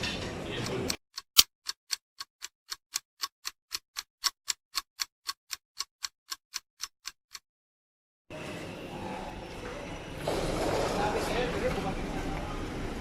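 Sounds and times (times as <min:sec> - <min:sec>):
clock ticking: 0:00.6 - 0:07.4.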